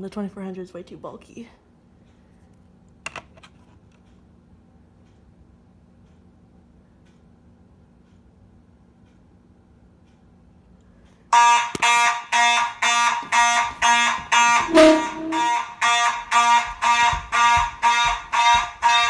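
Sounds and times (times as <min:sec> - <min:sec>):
fire alarm horn pulsing: 0:11.3 - 0:19.0.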